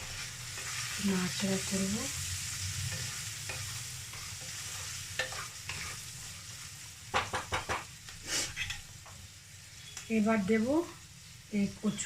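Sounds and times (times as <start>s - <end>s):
food sizzling in oil: 0.0s - 12.0s
spatula scraping pan: 2.8s - 6.4s, 8.3s - 8.9s.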